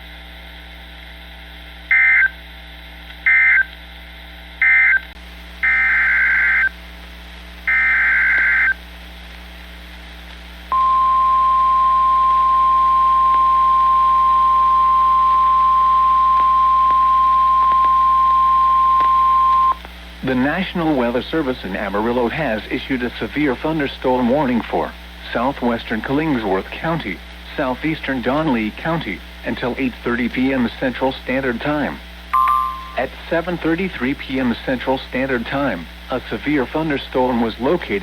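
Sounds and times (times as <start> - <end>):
steady warning alarm tone: 10.7 - 19.8, 32.4 - 33.0.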